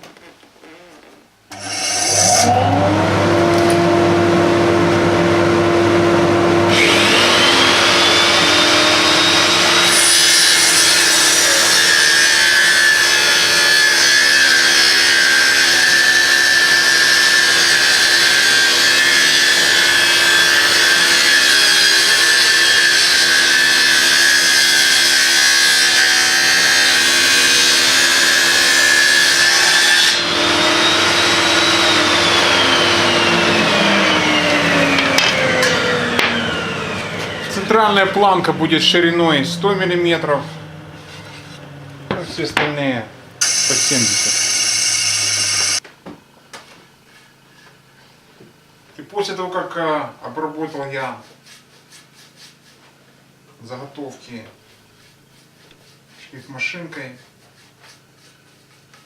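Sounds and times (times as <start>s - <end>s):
power saw cutting wood: 1.5s - 45.8s.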